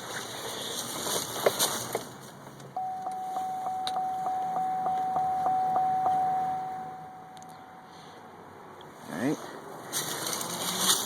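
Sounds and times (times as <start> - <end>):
pulsing electronic warning chime: 2.8 - 7.9.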